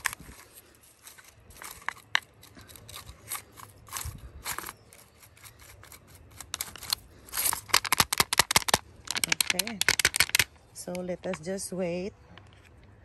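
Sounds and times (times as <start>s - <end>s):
brush scrubbing dirt: 0.0s - 7.7s.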